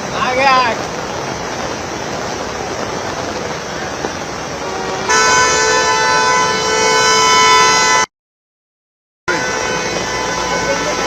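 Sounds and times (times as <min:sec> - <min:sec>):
rain: 0:00.0 - 0:08.1, 0:09.3 - 0:11.0
traffic on wet road: 0:00.0 - 0:08.1, 0:09.3 - 0:11.0.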